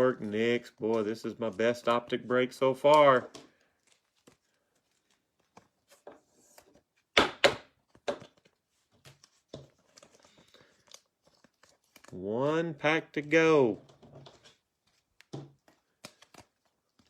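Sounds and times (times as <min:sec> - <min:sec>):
cards shuffled and set down: 0:02.8 - 0:12.2, 0:13.7 - 0:17.0.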